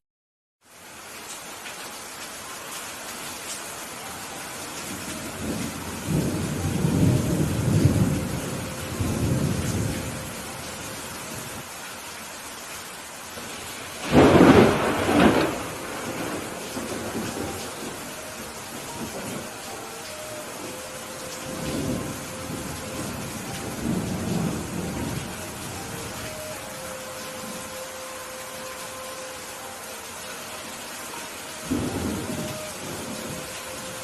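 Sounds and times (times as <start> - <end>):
rain hissing: 0.6 - 34.0
rolling thunder rumble: 5.2 - 10.6, 13.5 - 19.7, 20.6 - 26.6, 31.7 - 33.9
sharp thunderclap: 14.0 - 17.5.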